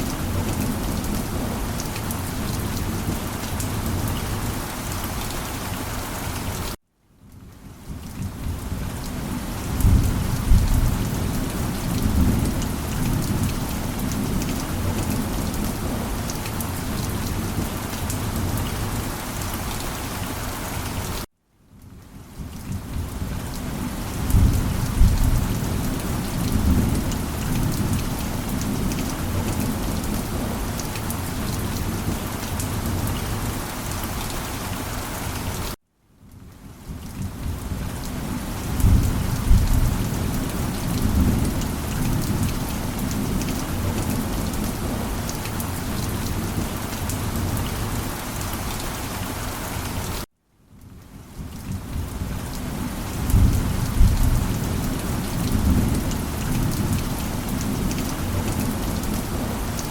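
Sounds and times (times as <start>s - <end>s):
heavy rain: 0.0s - 59.9s
thunder rolling: 38.7s - 40.3s.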